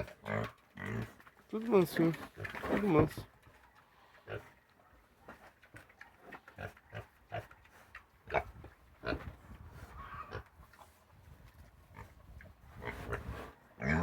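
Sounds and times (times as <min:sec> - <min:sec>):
pigs grunting: 0:00.0 - 0:01.3, 0:12.8 - 0:14.0.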